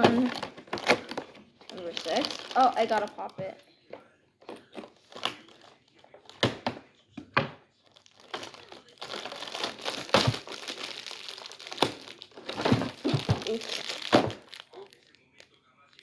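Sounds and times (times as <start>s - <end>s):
packaging crinkling and tearing: 0.0s - 3.4s, 7.8s - 16.0s
cardboard cracking: 7.9s - 15.0s.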